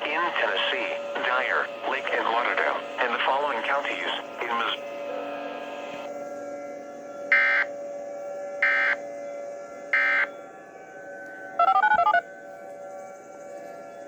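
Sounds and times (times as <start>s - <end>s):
faint steady hum: 0.0s - 10.4s, 11.5s - 12.2s
rapidly alternating electronic beeps: 7.3s - 7.7s, 8.6s - 9.0s, 10.0s - 10.3s, 11.6s - 12.2s
digital data tone screech: 11.6s - 12.2s.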